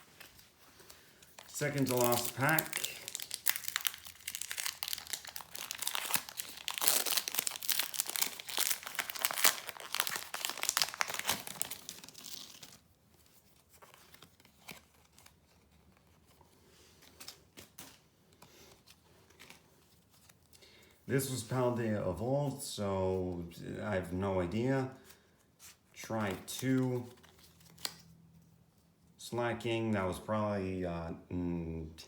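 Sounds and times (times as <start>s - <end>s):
foil wrapper crinkling and tearing: 1.1s - 12.9s.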